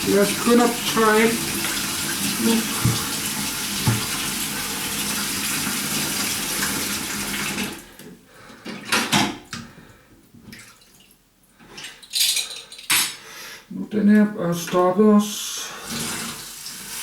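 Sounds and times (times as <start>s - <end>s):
tap running water into sink: 0.0s - 7.8s, 15.9s - 17.0s.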